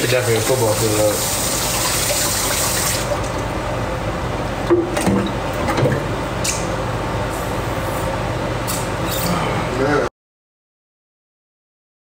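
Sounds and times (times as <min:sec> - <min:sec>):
kitchen tap running: 0:00.0 - 0:03.4.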